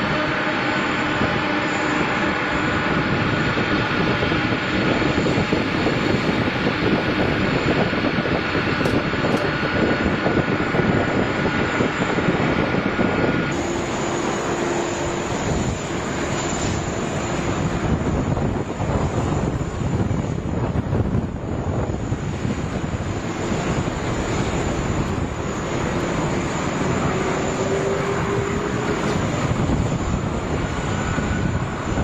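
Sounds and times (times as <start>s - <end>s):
jet engines roaring and whining: 0.0s - 32.0s.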